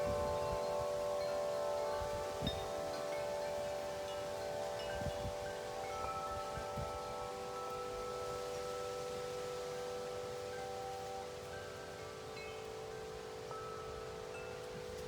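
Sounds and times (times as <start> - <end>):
wind rumbling on microphone: 0.0 - 9.7
wind chimes ringing: 0.0 - 15.0.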